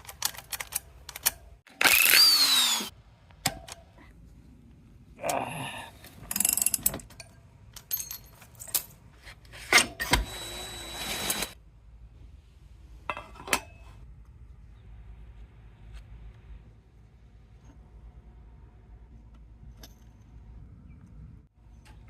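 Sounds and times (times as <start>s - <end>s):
metal tools clinking: 6.3s - 9.0s.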